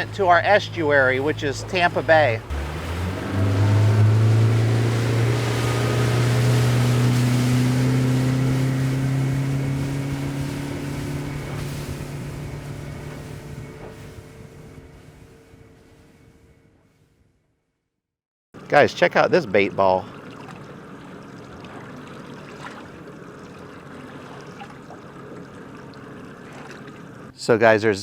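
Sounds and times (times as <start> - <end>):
rushing water: 0.0 - 15.8, 18.6 - 27.4
motorboat engine drone: 0.0 - 17.3, 18.6 - 27.8
wind noise: 2.4 - 16.6.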